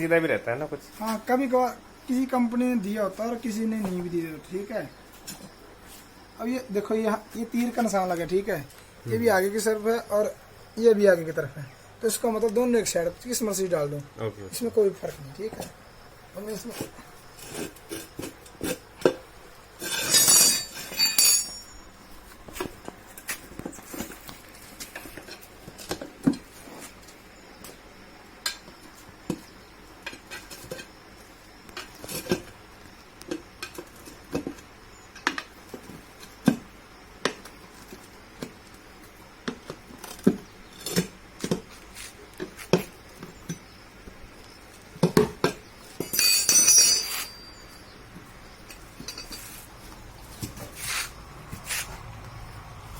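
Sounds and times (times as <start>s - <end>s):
metallic clinks of hand tools: 19.9s - 21.9s, 46.0s - 47.8s, 48.7s - 49.6s.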